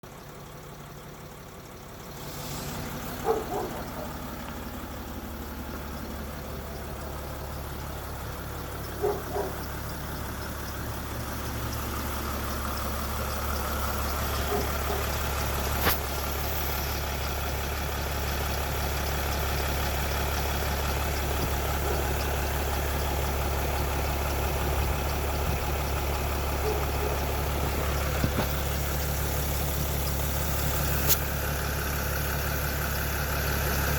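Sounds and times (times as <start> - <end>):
vehicle engine idling: 0.0 - 33.9.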